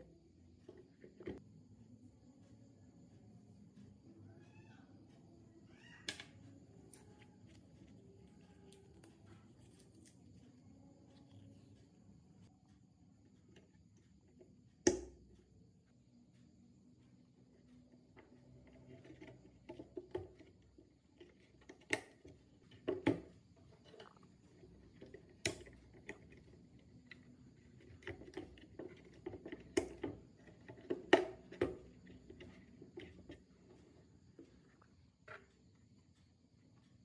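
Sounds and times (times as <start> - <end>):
small parts clicking and knocking: 18.2 - 34.5.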